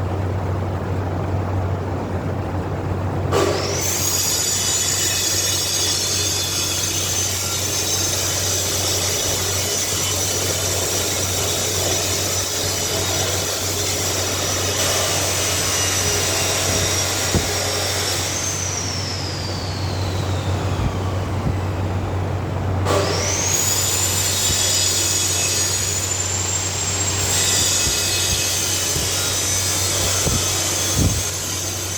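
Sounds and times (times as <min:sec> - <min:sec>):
angle grinder on metal: 0:03.4 - 0:20.9, 0:22.9 - 0:31.9
low hum: 0:10.6 - 0:24.2.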